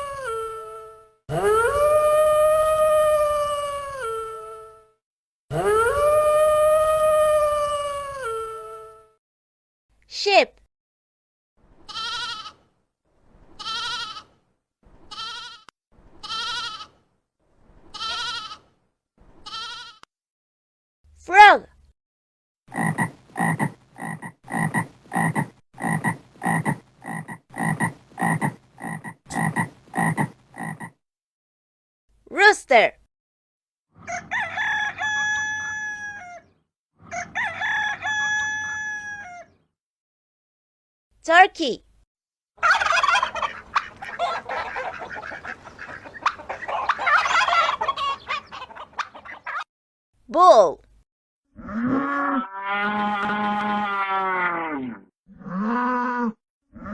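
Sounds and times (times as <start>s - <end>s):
turkey gobbling: 22.7s - 30.9s, 42.6s - 49.7s
frog croaking: 22.7s - 31.0s.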